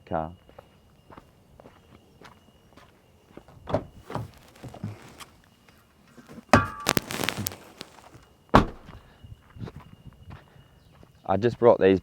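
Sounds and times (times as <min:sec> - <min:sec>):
footsteps: 0:00.5 - 0:11.6
car door shutting: 0:03.7 - 0:05.0, 0:08.6 - 0:09.0
clatter and rustling: 0:03.9 - 0:08.2.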